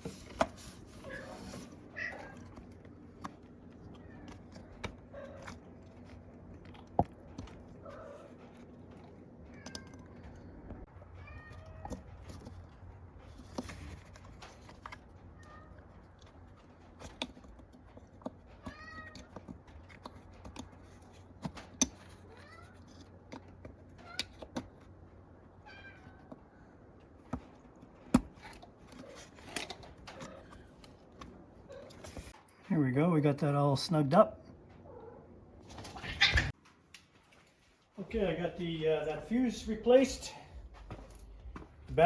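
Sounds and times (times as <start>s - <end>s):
hand tools clicking and tapping: 2.0s - 25.1s
cat meowing: 11.2s - 12.0s, 18.6s - 19.3s.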